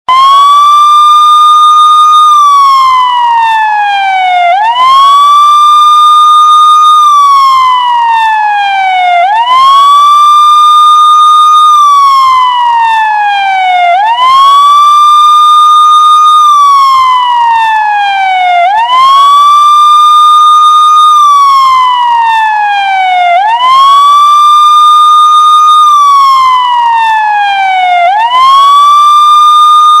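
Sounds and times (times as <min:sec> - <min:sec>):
police siren wailing: 0:00.1 - 0:30.0.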